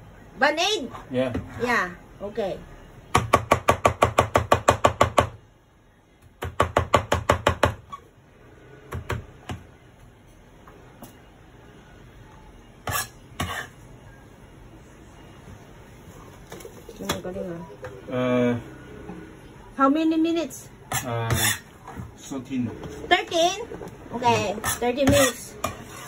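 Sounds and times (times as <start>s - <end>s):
knife chopping on a cutting board: 24.6s - 26.0s.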